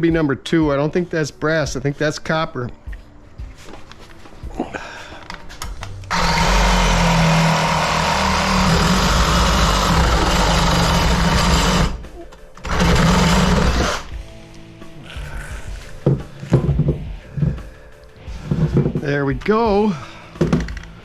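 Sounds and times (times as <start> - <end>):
power saw cutting copper pipe: 6.1 - 14.2.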